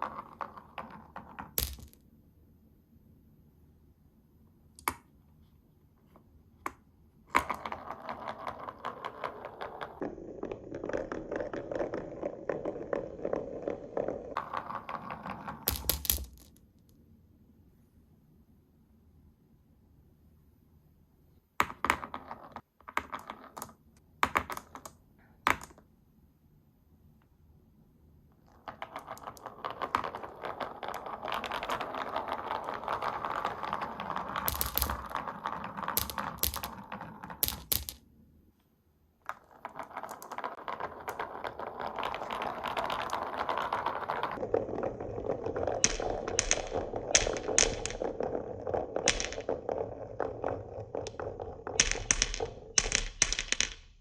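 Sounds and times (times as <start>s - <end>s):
marbles rolling on wooden run: 0.0s - 2.0s, 7.3s - 16.6s, 21.7s - 23.8s, 28.4s - 38.0s, 39.3s - 54.0s.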